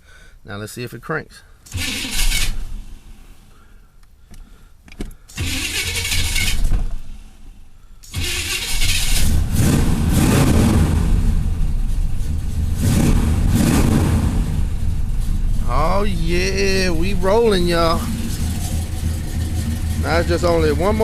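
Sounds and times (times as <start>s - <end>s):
starter motor cranking: 1.7s - 2.8s, 5.3s - 6.8s, 8.1s - 9.8s
car engine running loudly: 8.1s - 21.0s.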